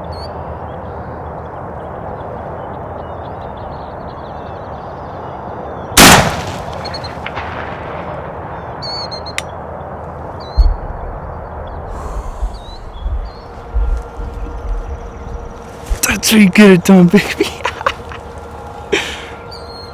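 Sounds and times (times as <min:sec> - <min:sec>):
small birds chirping: 0:02.1 - 0:07.3, 0:08.5 - 0:19.9
shotgun blast: 0:06.0 - 0:08.2.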